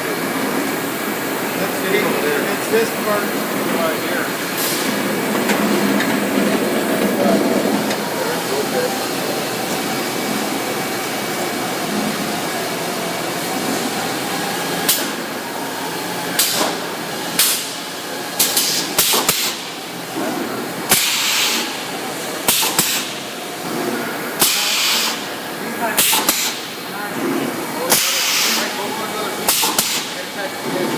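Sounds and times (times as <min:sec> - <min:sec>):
steady machine noise: 0:00.0 - 0:30.9
welding machine hissing bursts: 0:18.4 - 0:19.7, 0:20.9 - 0:21.8, 0:24.4 - 0:25.3, 0:27.9 - 0:28.8.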